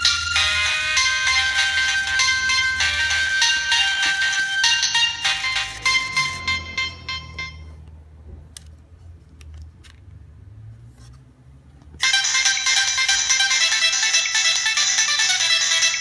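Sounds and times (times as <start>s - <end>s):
electronic ringtone melody: 0.0s - 7.8s, 12.0s - 16.0s.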